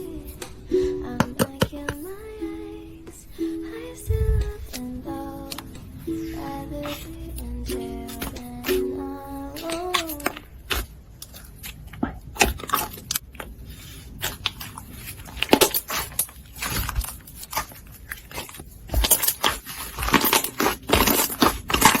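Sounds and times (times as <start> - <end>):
slime crackling and squelching: 5.4 - 22.0.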